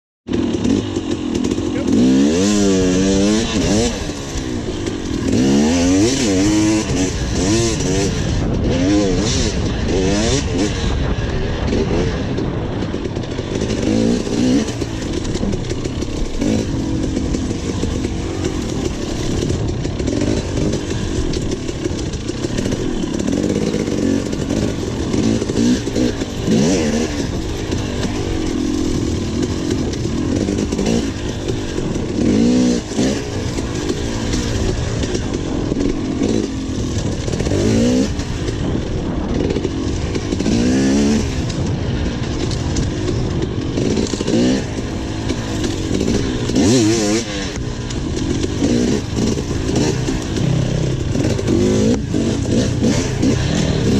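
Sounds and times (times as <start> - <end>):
dirt bike engine revving: 0.3 - 53.9.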